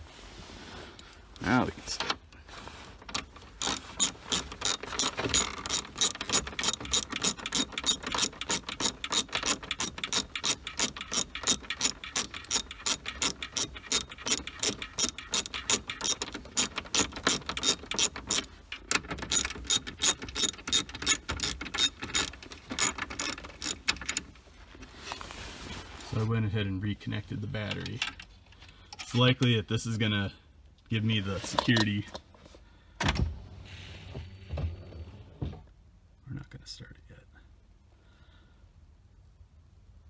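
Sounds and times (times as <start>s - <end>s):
hand ratchet clicking: 3.1s - 24.3s.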